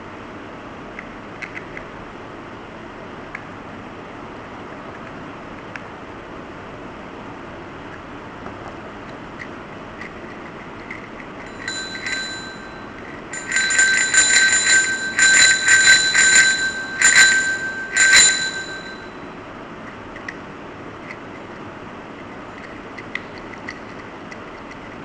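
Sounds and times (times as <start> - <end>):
bicycle bell ringing: 11.5 - 19.4.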